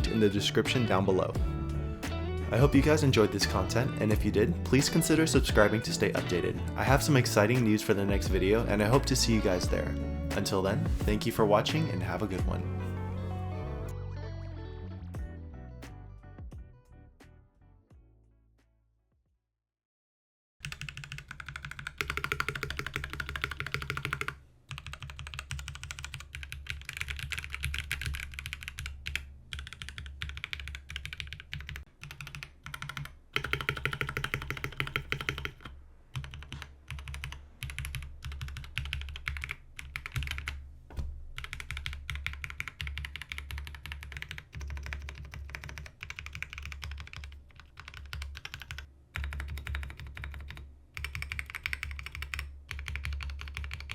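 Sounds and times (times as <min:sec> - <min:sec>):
fast typing on mechanical keyboard: 0:20.6 - 0:40.6, 0:41.4 - 0:53.9.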